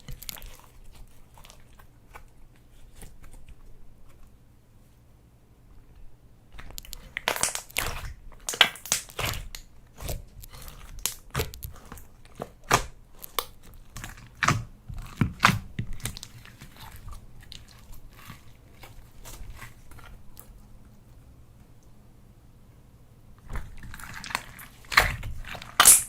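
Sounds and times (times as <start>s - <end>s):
slime crackling and popping: 0.0s - 2.3s, 6.6s - 20.5s, 23.5s - 26.0s.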